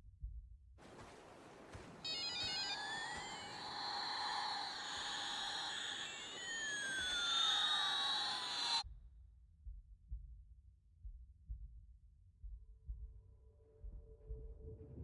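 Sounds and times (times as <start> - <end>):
electronic beeps and sliding tones: 2.0 - 8.8.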